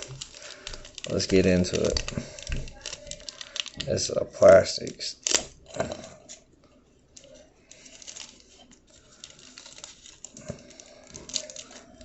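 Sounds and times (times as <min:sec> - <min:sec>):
plastic wrapper crinkling and tearing: 0:00.0 - 0:06.4, 0:07.1 - 0:12.0.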